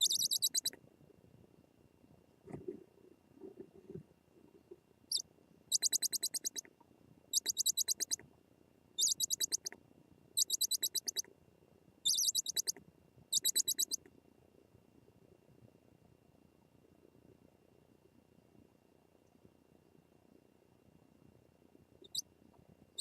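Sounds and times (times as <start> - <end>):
bird calling in rapid trills: 0.0 - 0.7, 7.4 - 8.2, 9.0 - 9.7, 10.4 - 11.2, 12.1 - 12.7.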